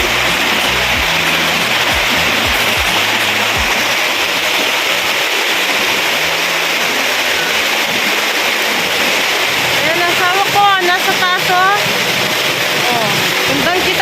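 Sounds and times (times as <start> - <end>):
background music: 0.0 - 5.0
waterfall rushing: 0.0 - 14.0.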